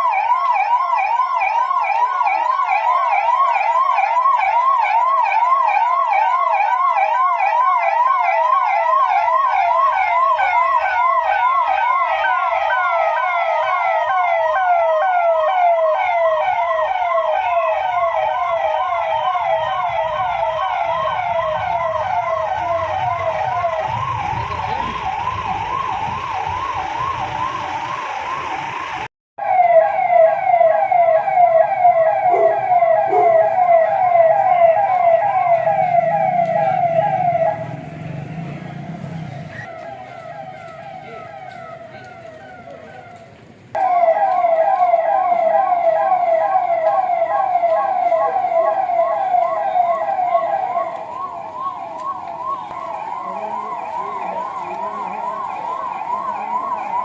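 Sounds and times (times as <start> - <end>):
police siren yelping: 0.0 - 57.0
low vehicle rumble: 16.2 - 29.1, 35.3 - 43.7.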